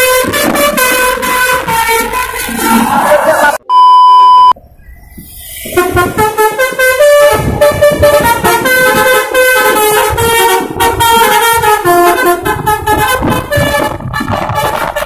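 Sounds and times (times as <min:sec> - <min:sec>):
multi-tone air horn melody: 0:00.0 - 0:03.6, 0:05.7 - 0:15.0.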